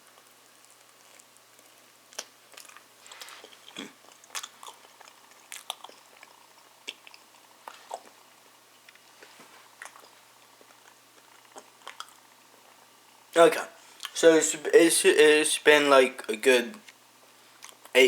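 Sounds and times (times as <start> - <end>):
chewing crunchy pizza crust: 0.0 - 13.0, 16.7 - 18.0.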